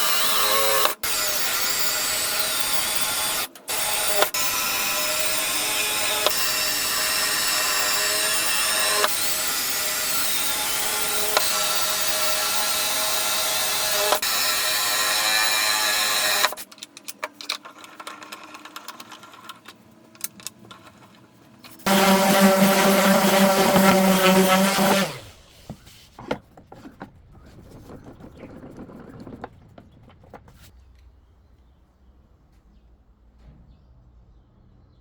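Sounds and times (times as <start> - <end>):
small electric motor running: 0.2 - 16.6, 21.8 - 25.5.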